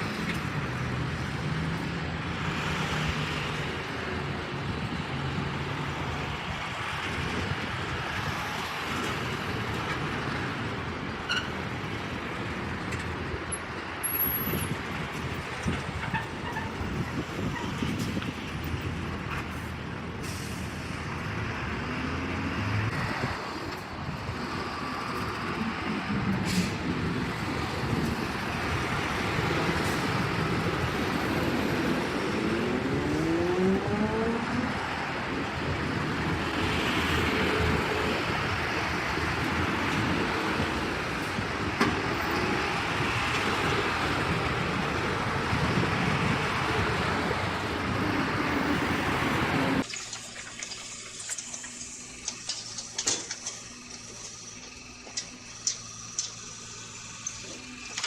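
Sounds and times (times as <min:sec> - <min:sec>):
heavy vehicle engine running: 0:00.0 - 0:58.0
mechanical noise: 0:49.8 - 0:58.0.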